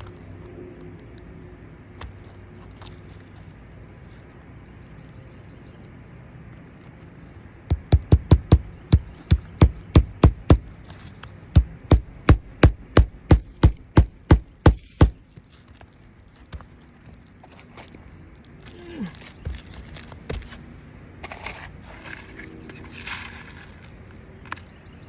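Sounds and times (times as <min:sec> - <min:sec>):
hammer driving nails: 0:07.7 - 0:10.7, 0:11.6 - 0:15.2.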